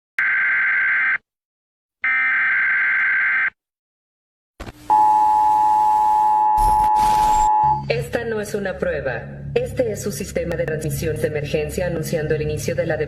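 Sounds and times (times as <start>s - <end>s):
harsh buzzing alert tones: 6.6s - 7.9s.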